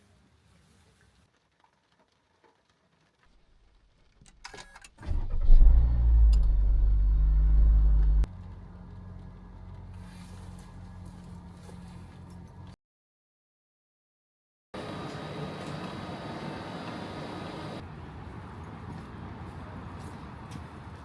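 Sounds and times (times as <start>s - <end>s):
car engine starting and idling: 4.9s - 12.8s.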